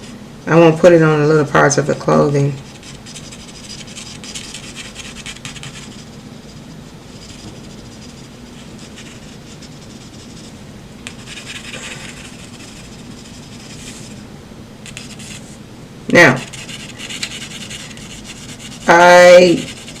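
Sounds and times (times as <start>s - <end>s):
pencil shading on paper: 11.1s - 14.0s, 16.4s - 20.0s.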